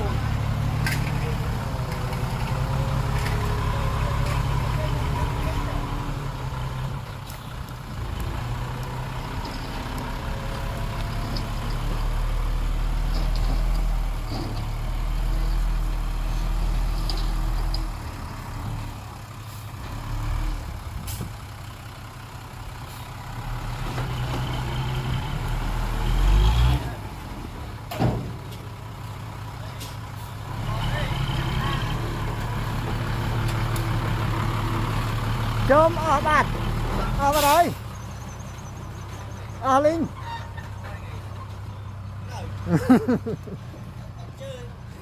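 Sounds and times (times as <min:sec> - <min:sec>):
heavy diesel engines running: 0:00.0 - 0:45.0.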